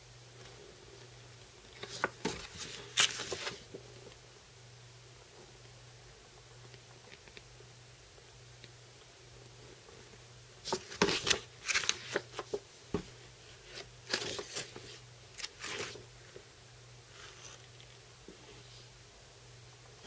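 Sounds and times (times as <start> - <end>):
paper pages rustling: 1.8 - 3.6, 10.6 - 12.6, 13.6 - 16.0.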